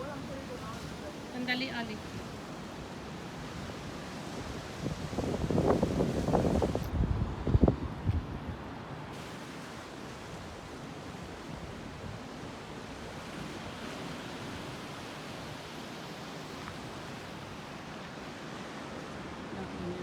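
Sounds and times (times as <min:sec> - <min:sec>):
ocean waves washing: 0:00.0 - 0:20.0.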